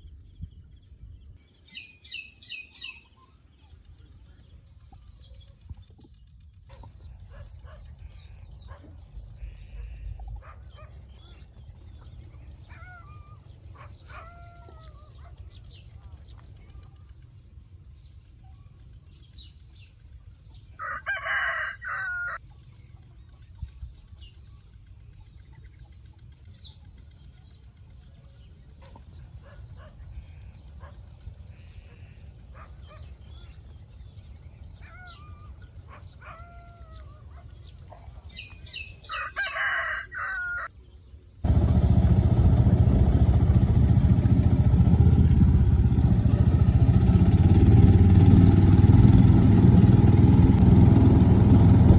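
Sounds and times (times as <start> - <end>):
small birds chirping: 0.0 - 21.6, 22.3 - 47.6
rooster crowing: 20.8 - 22.4, 39.0 - 40.7
loud steady low noise: 41.4 - 51.9.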